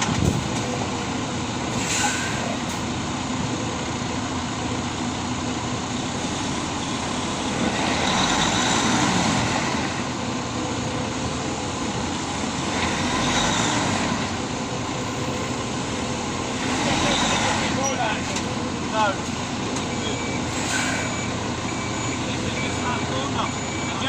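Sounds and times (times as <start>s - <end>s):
heavy vehicle engine running: 0.0s - 24.0s.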